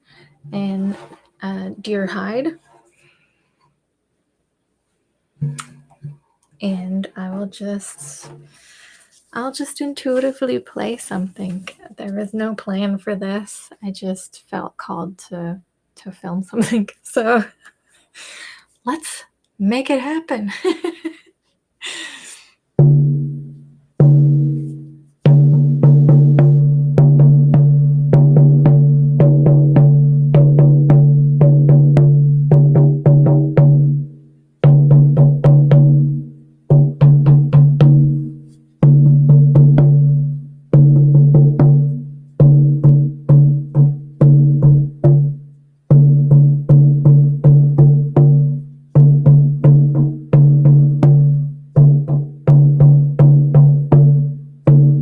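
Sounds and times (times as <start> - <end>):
hand drum beating: 22.8 - 55.0.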